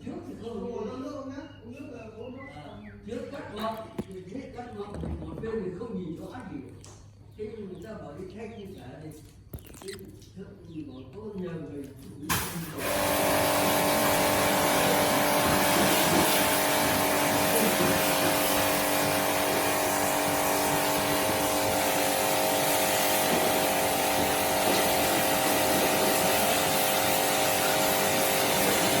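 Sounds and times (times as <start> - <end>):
machine motor humming: 12.8 - 29.0.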